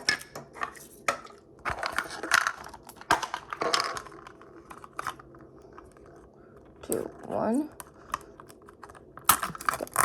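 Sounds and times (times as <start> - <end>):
plastic packaging crinkling: 8.4 - 10.0.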